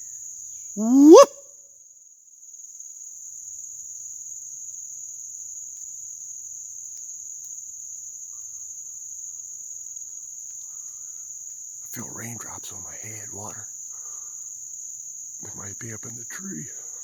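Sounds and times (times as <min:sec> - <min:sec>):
insects chorus: 0:00.0 - 0:17.0
faint ticks: 0:05.6 - 0:06.0, 0:06.8 - 0:08.8, 0:09.9 - 0:12.0.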